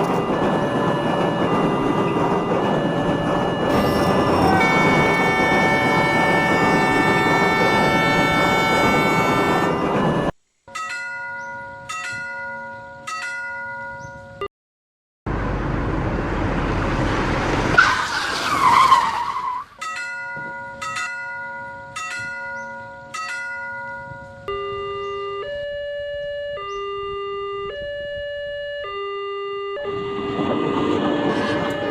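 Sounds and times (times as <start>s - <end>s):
train rushing by with squeal: 0.0s - 10.3s, 17.2s - 19.8s, 29.9s - 31.9s
railroad crossing bell: 0.0s - 14.5s, 19.8s - 31.9s
held electronic tone: 0.9s - 10.3s.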